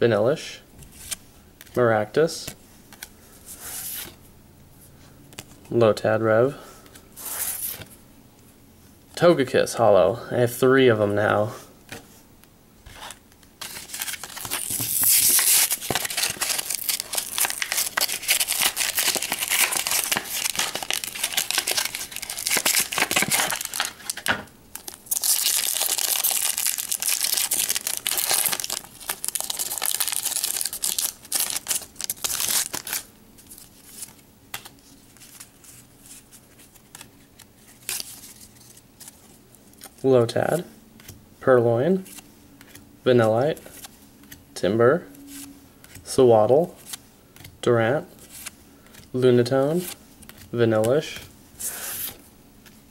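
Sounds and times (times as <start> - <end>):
plastic and foil crinkling: 13.0 - 34.2
packaging tearing: 13.6 - 33.6.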